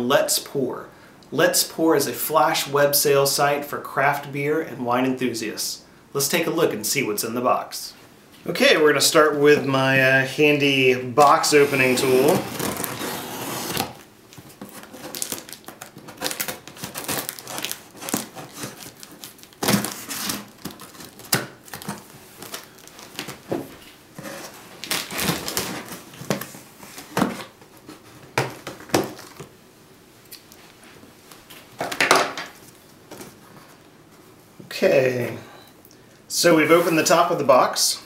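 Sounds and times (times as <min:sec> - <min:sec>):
tool cutting packing tape: 0:11.6 - 0:14.0.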